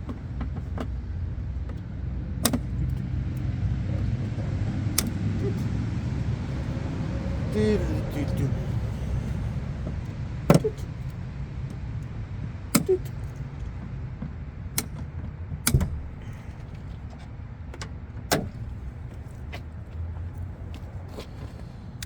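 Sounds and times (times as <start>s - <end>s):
low steady rumble: 0.0s - 22.0s
sharp clicks and knocks: 1.6s - 5.7s, 9.8s - 11.8s, 12.7s - 18.8s.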